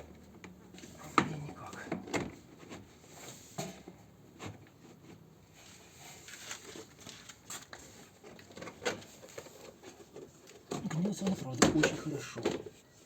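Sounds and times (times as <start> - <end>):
siding panels clicking and knocking: 10.3 - 12.8.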